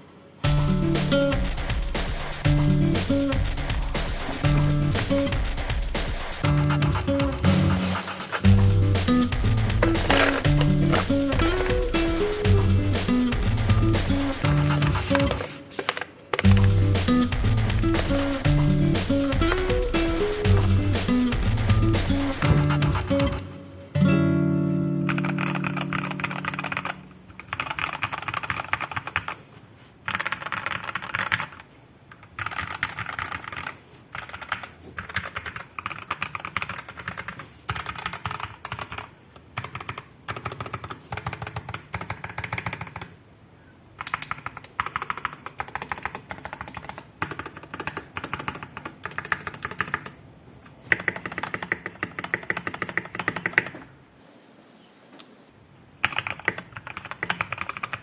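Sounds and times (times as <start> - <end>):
typing on mechanical keyboard: 25.1 - 29.4, 30.0 - 43.2, 44.0 - 50.2, 50.9 - 53.8, 56.0 - 58.0.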